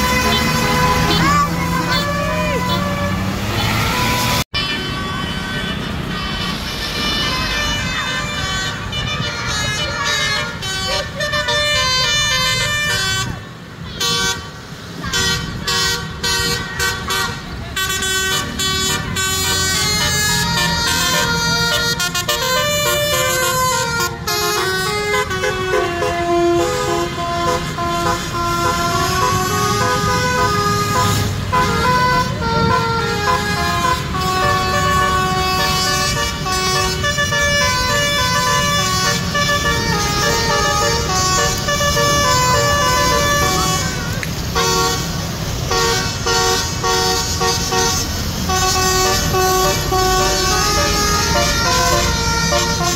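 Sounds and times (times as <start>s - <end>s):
bus multi-tone air horn tune: 0.0s - 52.9s.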